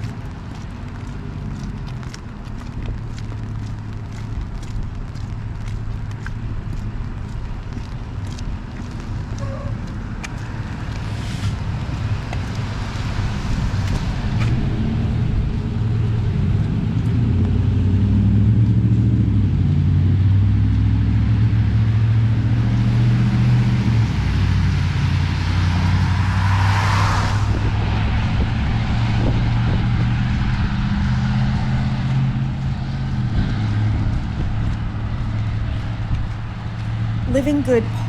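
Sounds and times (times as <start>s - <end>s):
vehicle engine hum: 0.0s - 38.0s
tyres hissing on wet road: 11.0s - 13.8s.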